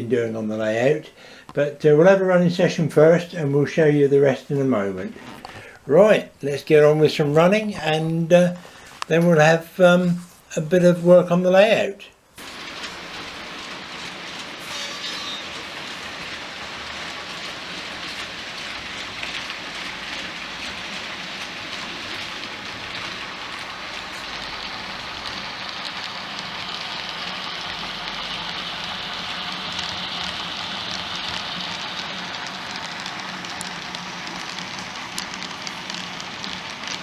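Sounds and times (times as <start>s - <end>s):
model train wheels hissing on rail: 12.4s - 37.0s.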